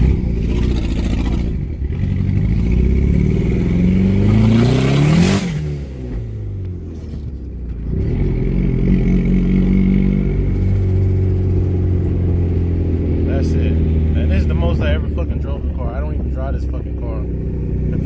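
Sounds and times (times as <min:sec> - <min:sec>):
car engine accelerating: 0:00.0 - 0:18.0.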